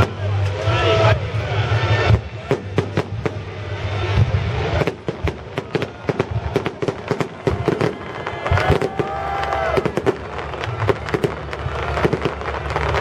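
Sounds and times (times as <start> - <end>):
fireworks bangs and crackles: 0.0 - 13.0.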